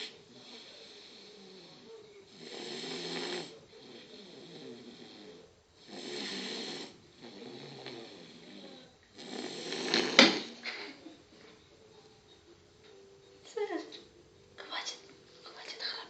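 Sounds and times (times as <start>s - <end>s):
puppy snoring: 0.0s - 11.0s.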